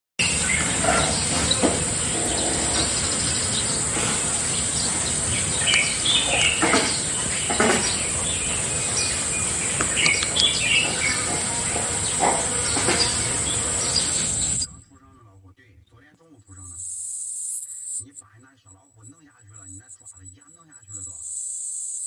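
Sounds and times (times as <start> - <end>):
birds chirping: 0.2 - 14.8
steady high-pitched buzz: 0.2 - 14.9, 16.6 - 18.2, 18.8 - 22.0.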